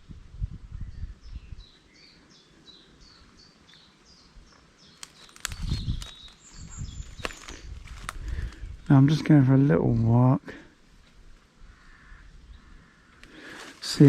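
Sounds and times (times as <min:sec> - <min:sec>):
wind rumble on microphone: 0:00.0 - 0:01.8, 0:05.5 - 0:10.1
songbird singing: 0:00.7 - 0:14.0
clicks and rustles: 0:05.0 - 0:08.6.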